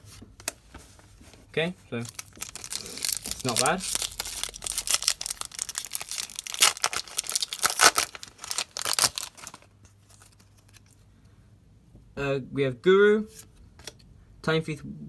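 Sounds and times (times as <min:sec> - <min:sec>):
foil wrapper crinkling: 0:02.0 - 0:11.0.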